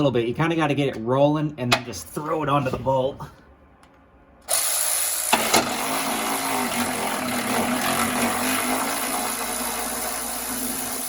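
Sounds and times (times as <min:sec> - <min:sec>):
impact wrench running: 0:04.4 - 0:11.0.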